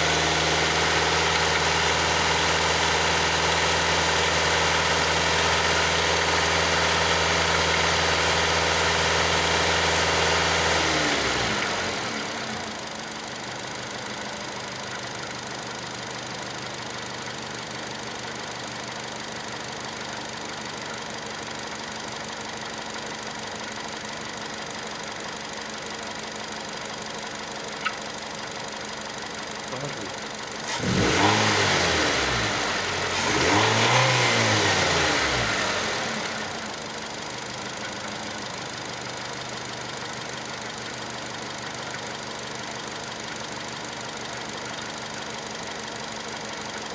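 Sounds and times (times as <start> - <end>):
engine revving and idling: 0.0 - 14.0, 28.9 - 46.9.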